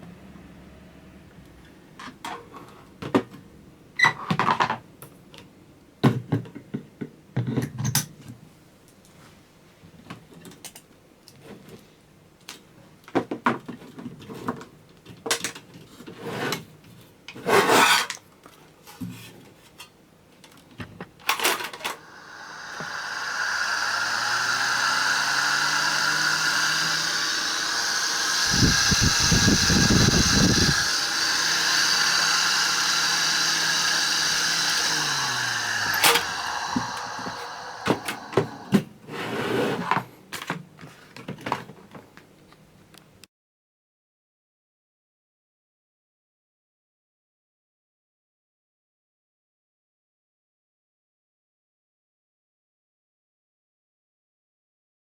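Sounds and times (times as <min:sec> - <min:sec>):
exhaust fan running: 0:21.8 - 0:38.9.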